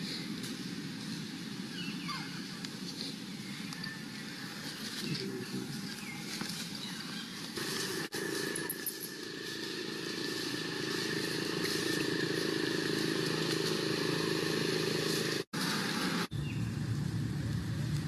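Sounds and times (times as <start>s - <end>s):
vehicle engine hum: 4.5s - 18.0s.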